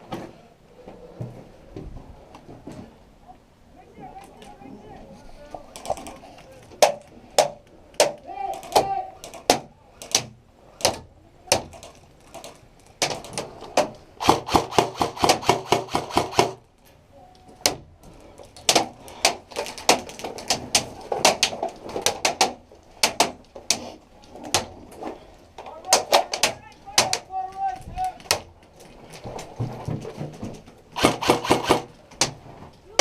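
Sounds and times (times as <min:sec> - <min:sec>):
airsoft guns firing: 0:14.2 - 0:16.6, 0:31.0 - 0:32.0.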